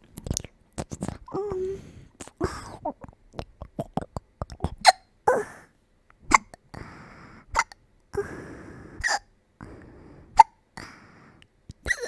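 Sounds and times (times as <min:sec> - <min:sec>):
breaths: 0:01.4 - 0:02.8, 0:06.7 - 0:11.5.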